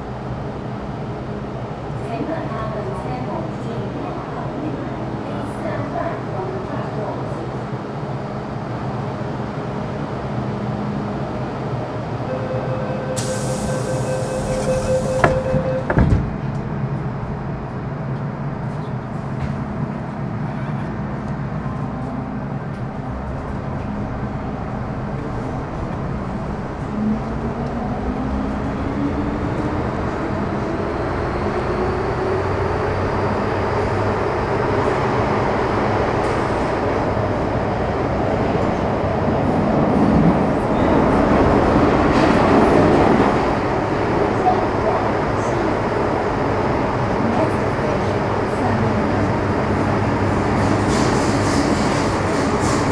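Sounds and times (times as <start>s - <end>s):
held tone: 12.3s - 16.0s
train wheels rumbling on rail: 13.2s - 52.9s.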